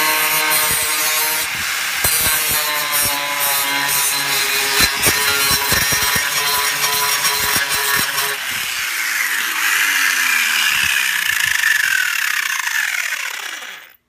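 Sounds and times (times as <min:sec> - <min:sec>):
grinder grinding metal: 0:00.0 - 0:14.0
grinder motor winding down: 0:05.7 - 0:14.0.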